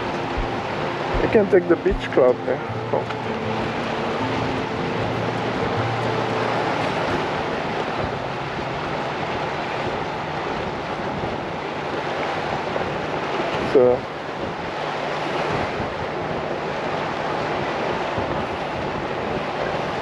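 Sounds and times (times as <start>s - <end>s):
sea surf washing on shore: 0.0s - 20.0s
wind buffeting microphone: 0.0s - 20.0s.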